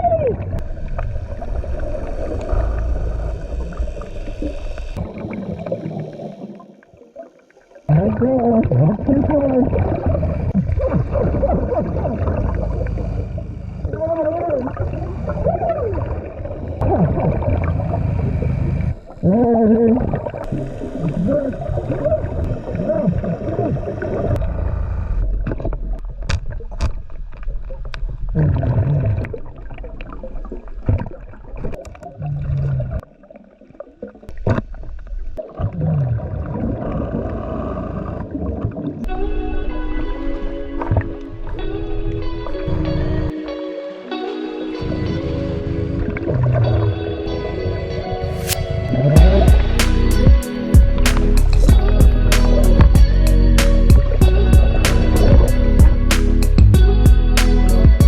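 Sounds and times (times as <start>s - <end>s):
low rumble: 0.0s - 6.2s, 7.9s - 26.8s, 47.6s - 58.0s
bubbles gurgling underwater: 0.0s - 39.1s
diver breathing through regulator: 0.6s - 6.9s
sharp clicks: 51.0s - 52.7s.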